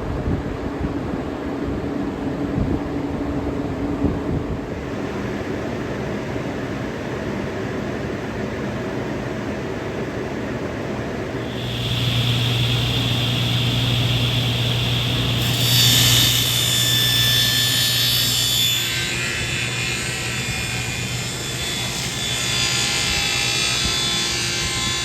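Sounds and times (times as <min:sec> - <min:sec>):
woodworking power tool running: 0:11.4 - 0:25.0.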